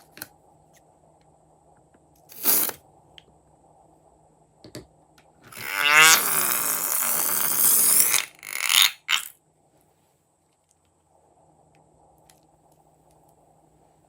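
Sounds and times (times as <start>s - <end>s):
balloon sputtering air out: 2.3s - 2.8s, 5.5s - 9.3s.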